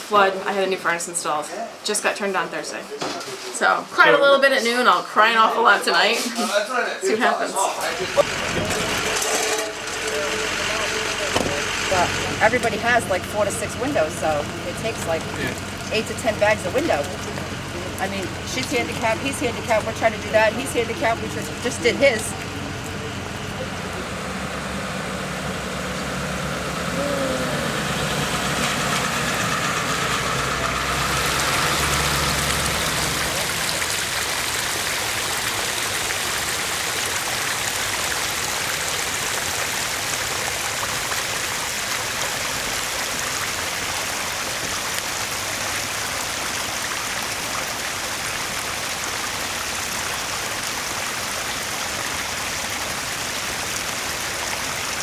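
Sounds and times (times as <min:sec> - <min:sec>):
rushing water: 0:00.0 - 0:55.0
vehicle engine idling: 0:08.0 - 0:34.6.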